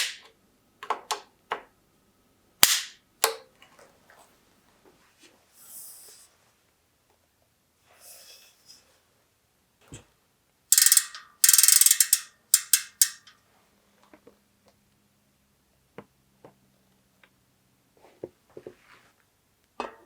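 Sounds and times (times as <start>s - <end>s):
ratchet clicking rapidly: 10.7s - 13.3s.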